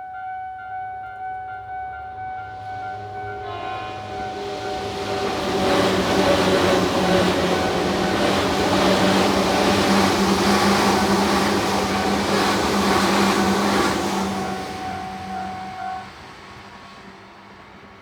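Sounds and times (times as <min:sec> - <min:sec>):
train running past: 0:00.6 - 0:18.0.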